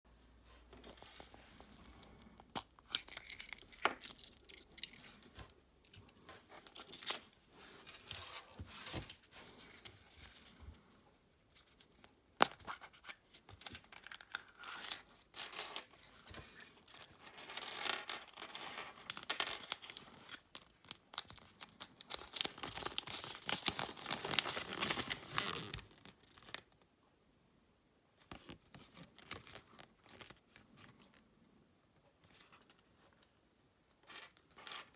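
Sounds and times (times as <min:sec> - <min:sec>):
foil wrapper crinkling and tearing: 0:01.1 - 0:05.2, 0:18.3 - 0:26.6.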